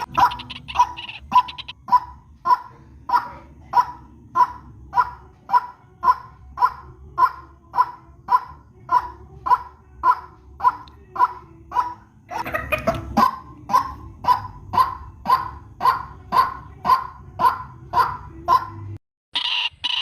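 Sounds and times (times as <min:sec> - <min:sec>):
recorded bird call: 0:00.0 - 0:11.9, 0:13.7 - 0:20.0.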